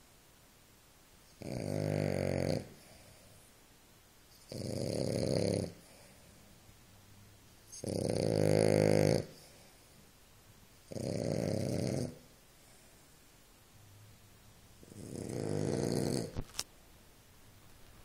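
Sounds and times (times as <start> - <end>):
puppy snoring: 1.3 - 3.3, 4.3 - 6.3, 7.7 - 10.0, 10.8 - 12.9, 14.8 - 16.4.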